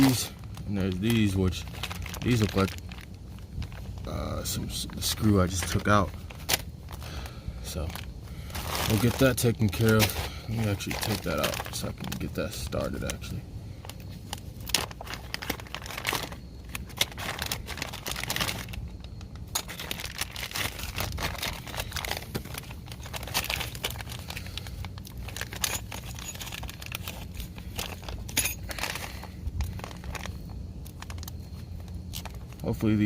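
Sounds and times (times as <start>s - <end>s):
plastic packaging crinkling: 0.0s - 33.0s
small parts clicking and knocking: 25.0s - 32.6s.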